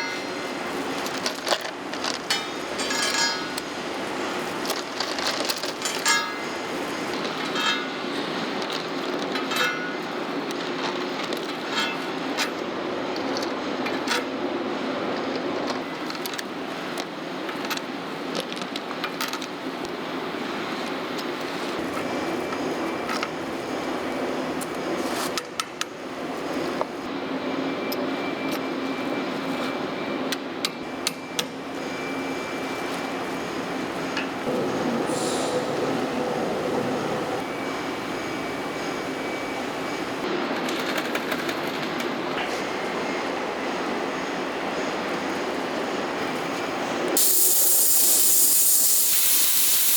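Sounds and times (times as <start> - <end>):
factory machinery hum: 0.0 - 18.4, 19.3 - 49.9
steel parts clinking: 2.3 - 3.7
factory machinery humming: 30.6 - 40.9.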